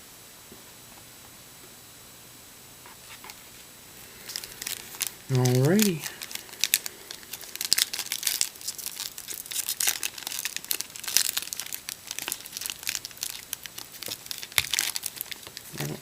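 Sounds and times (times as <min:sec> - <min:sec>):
wrapper crinkling and tearing: 0:04.0 - 0:16.0.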